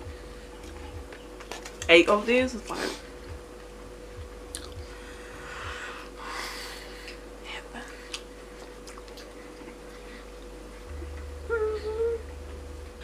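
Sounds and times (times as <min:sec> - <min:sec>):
faint hum: 0:00.0 - 0:13.0
chewing fried chicken: 0:07.9 - 0:10.5.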